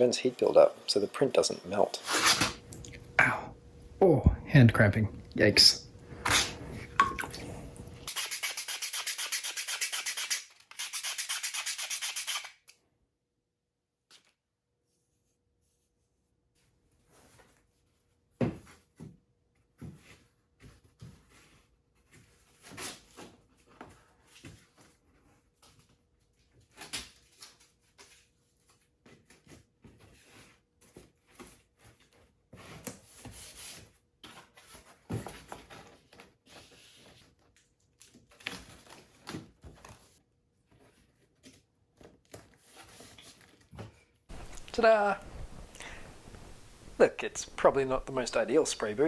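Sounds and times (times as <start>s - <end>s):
scraping or rubbing: 2.0s - 2.6s.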